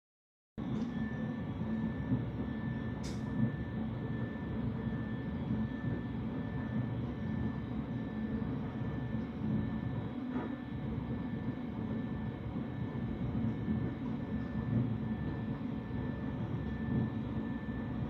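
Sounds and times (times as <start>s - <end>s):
milling machine humming: 0.6s - 18.0s
short click: 3.0s - 3.3s.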